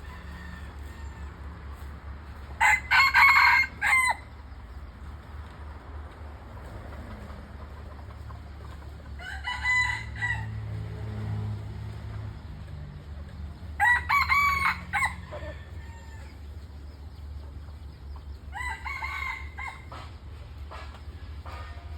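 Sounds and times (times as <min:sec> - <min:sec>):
rooster crowing: 0:00.0 - 0:01.6, 0:02.6 - 0:04.3, 0:09.2 - 0:10.8, 0:13.8 - 0:16.4, 0:18.5 - 0:19.9.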